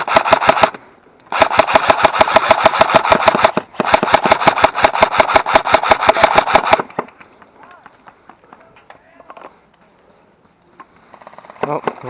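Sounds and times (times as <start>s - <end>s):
rapid gunshots: 0.0s - 7.1s, 11.0s - 12.0s.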